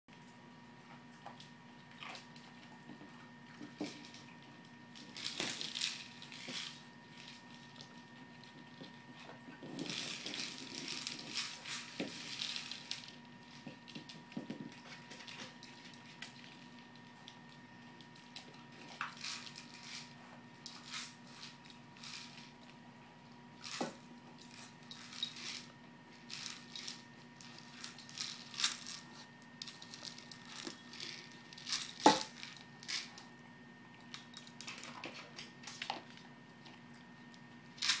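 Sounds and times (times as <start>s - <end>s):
faint electrical hum: 0.1s - 38.0s
collar tags clinking: 26.3s - 33.4s.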